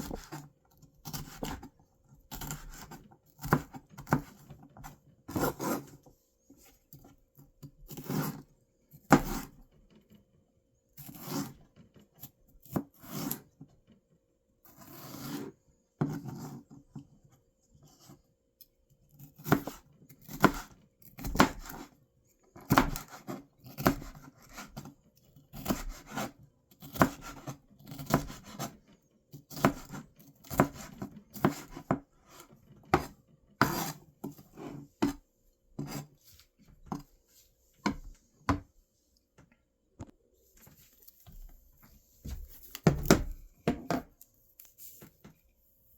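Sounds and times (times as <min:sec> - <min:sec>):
knife chopping on cutting board: 0:01.0 - 0:01.7, 0:02.3 - 0:05.9, 0:09.1 - 0:09.6, 0:19.3 - 0:21.9, 0:22.6 - 0:24.9, 0:25.6 - 0:28.8, 0:29.4 - 0:35.2, 0:35.8 - 0:36.1, 0:42.2 - 0:44.1
knife scraping board: 0:02.3 - 0:07.1, 0:07.9 - 0:08.5, 0:09.1 - 0:09.6, 0:11.0 - 0:11.7, 0:12.6 - 0:13.5, 0:14.7 - 0:16.7, 0:19.3 - 0:21.9, 0:22.7 - 0:24.9, 0:25.6 - 0:28.8, 0:29.4 - 0:35.2, 0:35.8 - 0:37.1.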